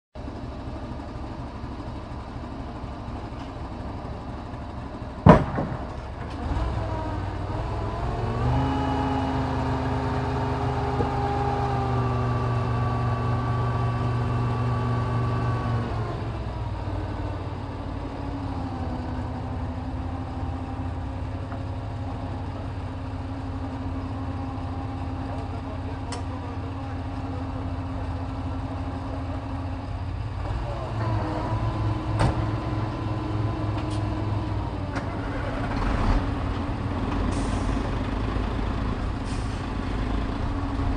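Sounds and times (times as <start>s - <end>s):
crane diesel engine running: 0.2s - 40.9s
sharp loud knock: 5.3s - 5.9s.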